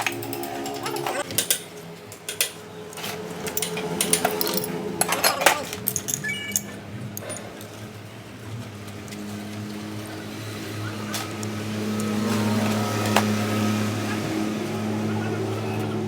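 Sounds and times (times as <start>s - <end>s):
small metal parts clinking: 0.0s - 7.8s.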